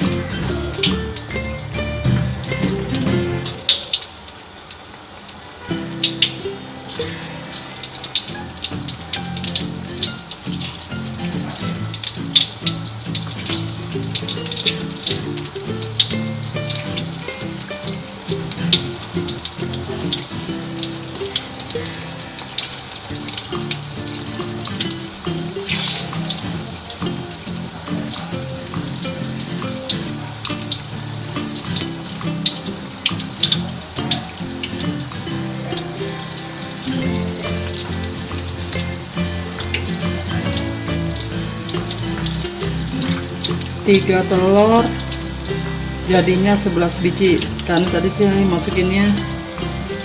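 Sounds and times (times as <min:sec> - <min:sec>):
background music: 0:00.0 - 0:03.8, 0:05.6 - 0:50.0
food frying in hot oil: 0:00.0 - 0:50.0.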